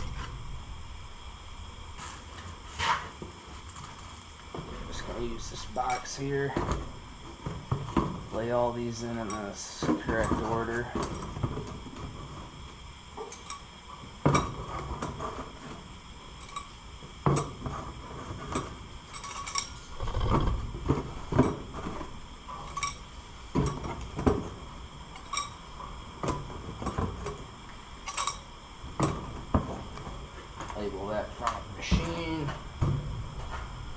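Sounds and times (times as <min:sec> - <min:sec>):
metal engine parts clinking: 0:19.1 - 0:20.0, 0:28.0 - 0:28.5.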